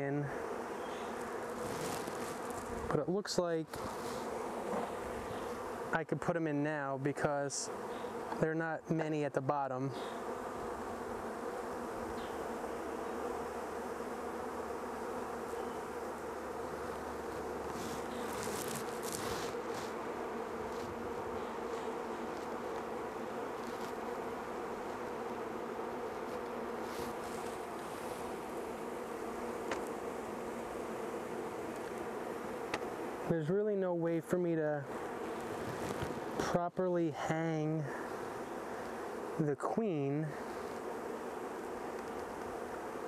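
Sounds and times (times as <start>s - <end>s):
bees buzzing: 0.0s - 43.0s
brief rustles: 17.7s - 20.0s.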